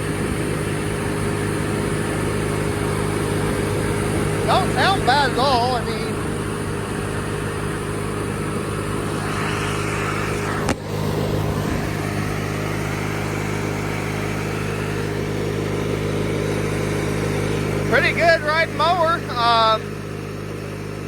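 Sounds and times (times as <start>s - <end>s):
riding lawnmower engine running: 0.0s - 21.0s.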